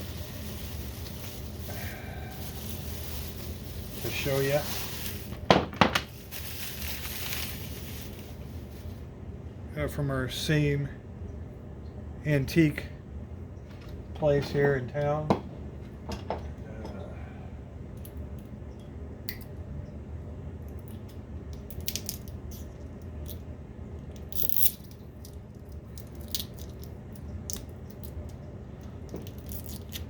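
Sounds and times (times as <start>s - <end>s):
low hum: 0.0s - 5.5s.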